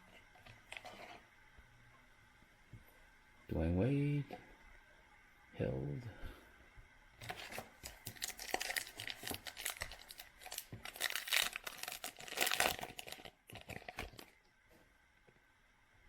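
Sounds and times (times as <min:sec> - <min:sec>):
foil wrapper crinkling: 0:07.2 - 0:14.4.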